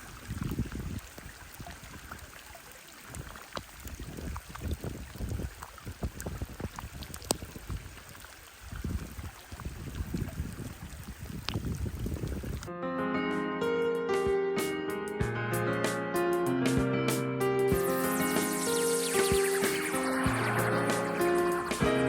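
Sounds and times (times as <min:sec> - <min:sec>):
water lapping and sloshing: 0:00.0 - 0:12.7
sharp ticks: 0:17.7 - 0:22.0.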